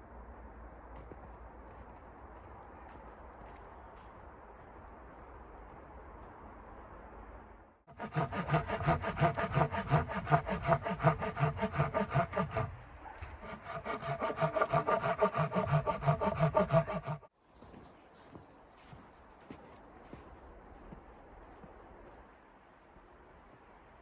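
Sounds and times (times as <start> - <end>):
hand saw cutting wood: 7.9 - 17.3.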